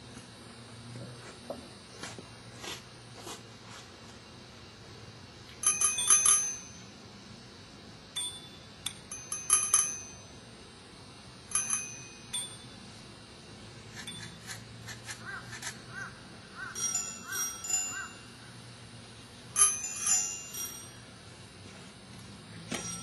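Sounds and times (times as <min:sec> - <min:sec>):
small metal bells ringing: 0:05.6 - 0:07.0, 0:08.1 - 0:10.4, 0:11.5 - 0:12.9, 0:16.6 - 0:18.6, 0:19.5 - 0:21.2, 0:22.6 - 0:23.0.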